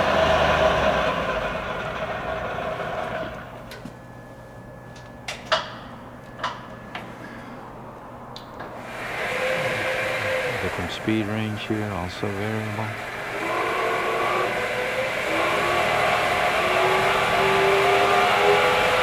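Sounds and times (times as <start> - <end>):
lathe running: 0.0 - 3.6, 8.6 - 19.0
steady electric hum: 3.4 - 19.0.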